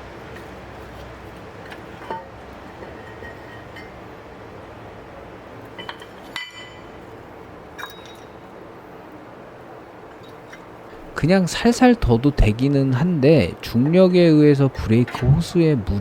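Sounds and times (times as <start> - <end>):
metal parts clinking: 7.8 - 8.4.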